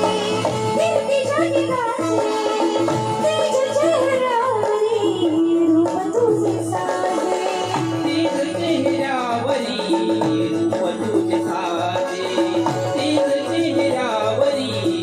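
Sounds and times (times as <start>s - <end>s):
drum beat: 5.2s - 15.0s.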